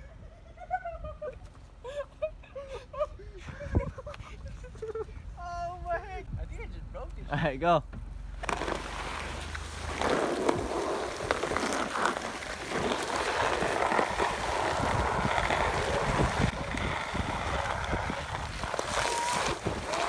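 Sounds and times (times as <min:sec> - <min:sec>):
wind buffeting microphone: 0:03.4 - 0:06.6, 0:13.3 - 0:20.0
sled scraping over snow: 0:08.3 - 0:20.0.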